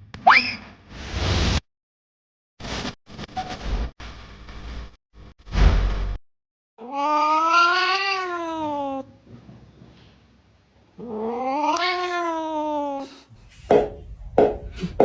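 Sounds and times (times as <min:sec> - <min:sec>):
cat yowling: 0:06.8 - 0:09.0, 0:11.0 - 0:13.1.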